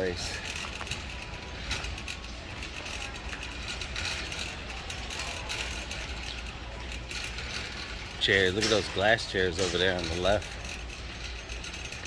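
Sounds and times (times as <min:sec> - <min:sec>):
shopping cart rattling: 0:00.0 - 0:12.0.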